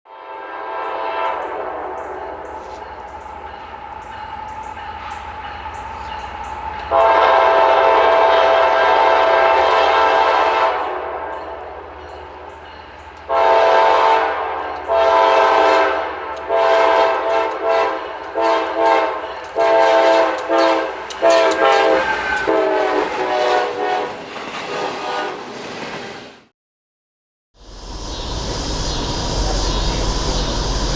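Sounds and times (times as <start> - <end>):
multi-chime train horn blasts: 0.1 - 25.4.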